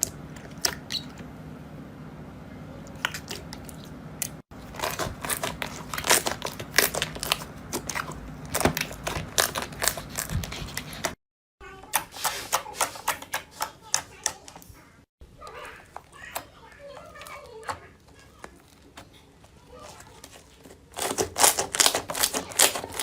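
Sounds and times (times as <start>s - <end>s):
slime crackling and popping: 4.6s - 10.6s.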